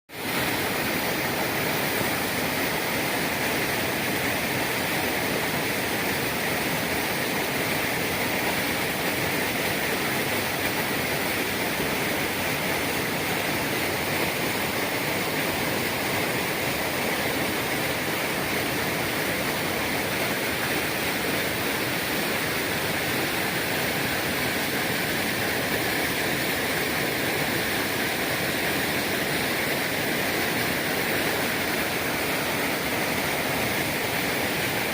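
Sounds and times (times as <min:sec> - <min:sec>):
steady rushing noise: 0:11.5 - 0:34.9.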